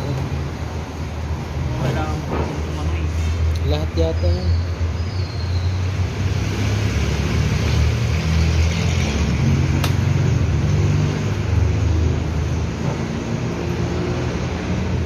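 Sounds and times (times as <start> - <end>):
low rumble of vehicle noise: 0.0 - 15.0
sharp click: 9.8 - 10.0.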